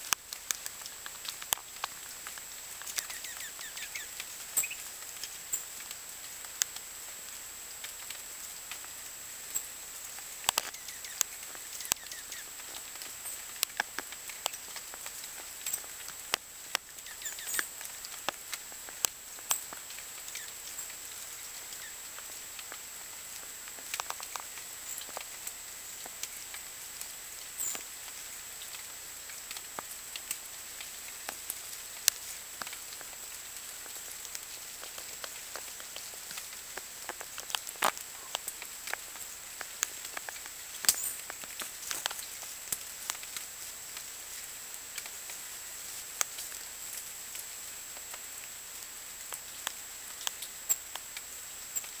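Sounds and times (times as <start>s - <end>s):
birds pecking taps and clicks: 0.1s - 6.9s, 9.5s - 22.8s, 23.4s - 26.6s, 27.4s - 44.1s, 48.8s - 52.0s
high bird chirps: 3.0s - 4.8s, 11.8s - 12.5s, 17.0s - 17.6s.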